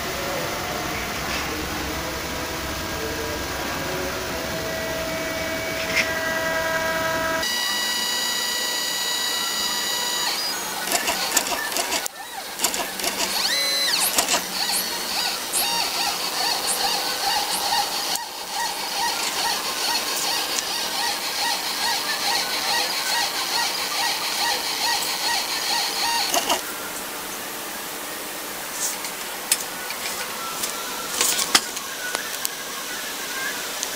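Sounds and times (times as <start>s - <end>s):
stepper motors whining and buzzing: 0.0s - 33.9s
clicks: 7.4s - 26.6s.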